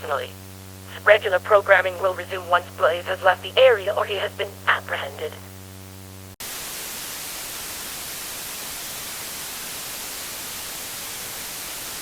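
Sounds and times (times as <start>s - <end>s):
loud radio static: 0.0s - 6.8s
low electrical buzz: 0.0s - 12.0s.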